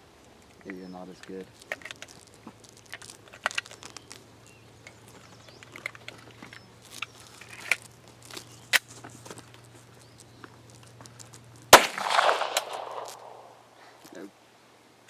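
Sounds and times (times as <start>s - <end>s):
pistol handling clicks: 11.8s - 13.8s.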